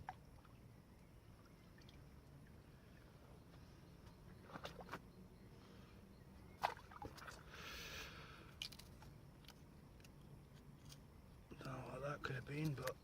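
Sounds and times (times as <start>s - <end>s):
small clicks and knocks: 8.6s - 11.8s.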